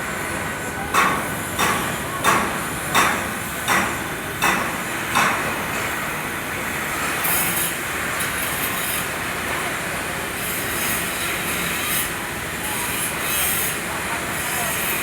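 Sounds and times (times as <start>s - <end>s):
hammer striking metal: 1.0s - 5.5s.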